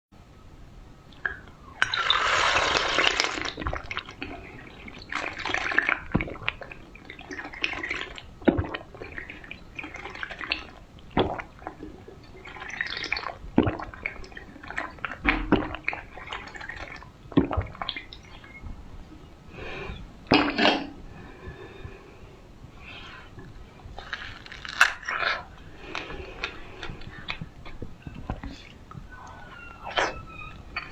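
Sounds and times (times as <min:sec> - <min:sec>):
sips and gulps: 0:01.2 - 0:22.1, 0:22.7 - 0:30.9
liquid rushing from a glass: 0:01.8 - 0:18.6.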